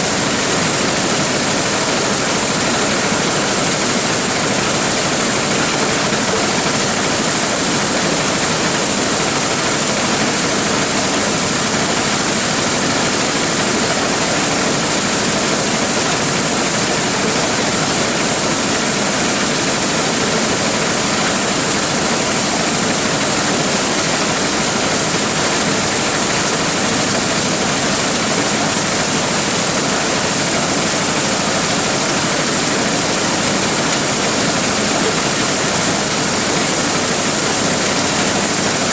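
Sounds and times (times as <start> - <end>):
corn sheller machine running: 0.0 - 38.9.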